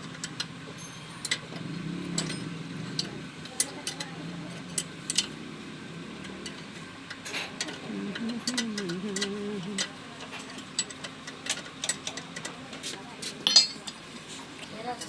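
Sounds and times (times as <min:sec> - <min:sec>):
tools clicking and tapping: 0:00.0 - 0:05.4, 0:06.2 - 0:14.0
muffled voice: 0:07.8 - 0:10.0.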